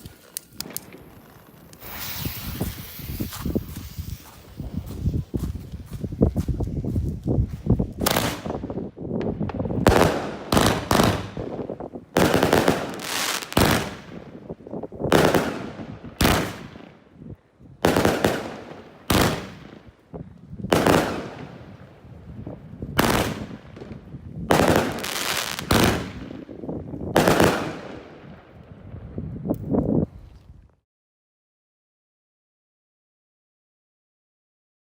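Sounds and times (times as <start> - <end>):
fireworks bangs with crackle: 0.0 - 6.6, 8.0 - 17.0, 17.8 - 29.2.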